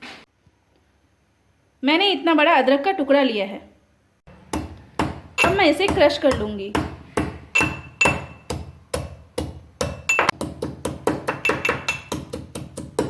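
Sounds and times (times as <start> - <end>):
ginger being pounded: 4.3 - 13.0.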